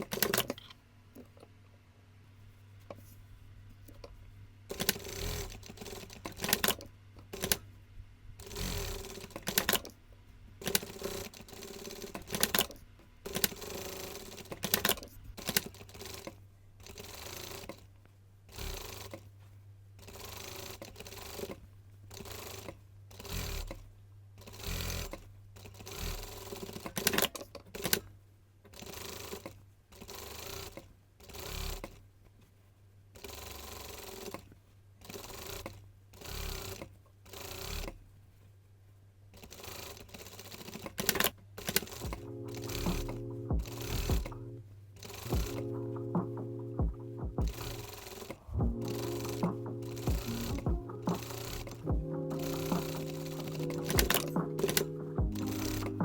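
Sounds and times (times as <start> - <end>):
sewing machine stitching: 0.0 - 1.4, 4.7 - 7.7, 8.4 - 10.0, 10.6 - 17.9, 18.5 - 19.3, 20.0 - 28.1, 28.7 - 32.0, 33.2 - 38.0, 39.3 - 44.4, 45.0 - 56.0
steady low hum: 41.8 - 56.0.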